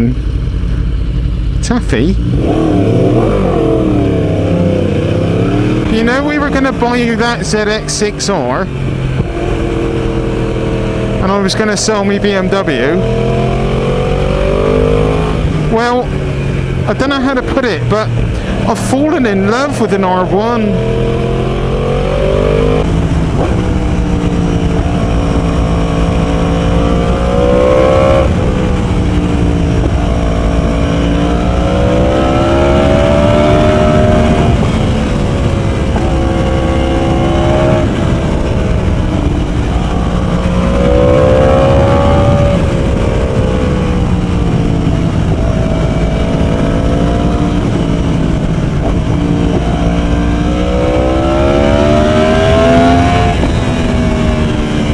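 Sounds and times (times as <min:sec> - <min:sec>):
loud motorcycle engine revving: 0:01.6 - 0:54.9.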